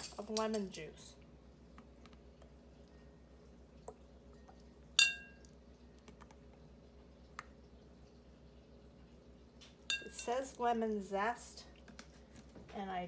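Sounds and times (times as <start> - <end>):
spoon clinking on bowl: 5.0 - 5.4, 9.9 - 10.3.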